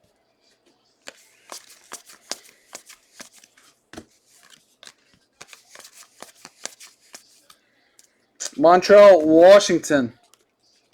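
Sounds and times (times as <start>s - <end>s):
cards snapping and sliding: 1.0s - 7.4s
trading cards flipped by hand: 1.0s - 7.6s.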